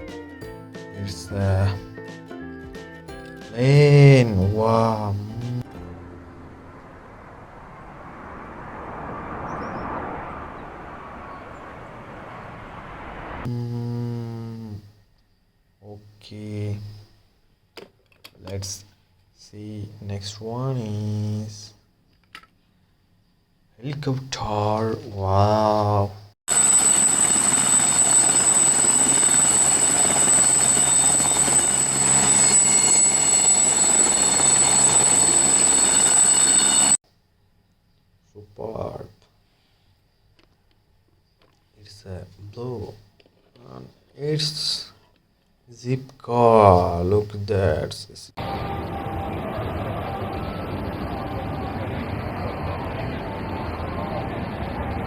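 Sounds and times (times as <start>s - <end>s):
high whine: 3.7s - 14.7s, 26.5s - 37.0s, 48.4s - 55.0s
airplane passing overhead: 5.7s - 13.5s, 48.4s - 55.0s
steady buzzing tone: 5.9s - 14.8s, 26.5s - 37.0s, 48.4s - 55.0s
helicopter engine and rotor: 26.5s - 37.0s, 48.4s - 55.0s.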